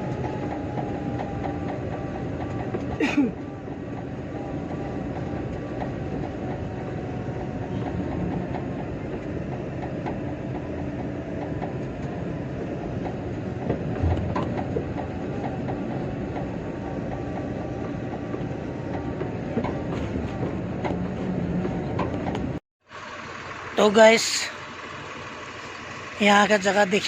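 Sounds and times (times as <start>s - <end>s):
truck driving rumble: 0.0s - 27.0s
rattling: 12.8s - 17.2s
heavy thump: 13.7s - 15.1s.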